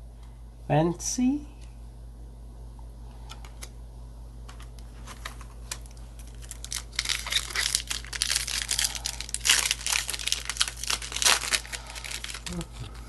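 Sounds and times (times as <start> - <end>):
foil wrapper crinkling: 4.8 - 13.0.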